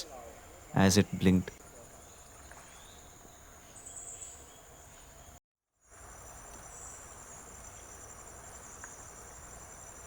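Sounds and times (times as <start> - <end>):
insects chirring: 0.0 - 10.0.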